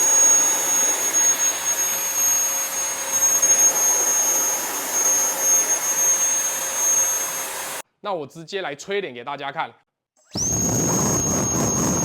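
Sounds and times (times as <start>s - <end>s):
high-pitched fan motor whine: 0.0s - 7.8s, 10.3s - 12.0s.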